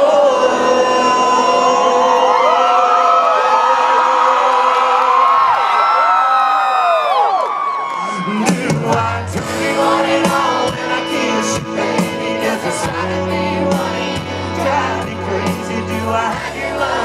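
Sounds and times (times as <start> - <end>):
person singing: 0.0 - 4.9, 8.0 - 17.0
live band music: 8.3 - 17.0
sustained bass notes: 8.5 - 17.0.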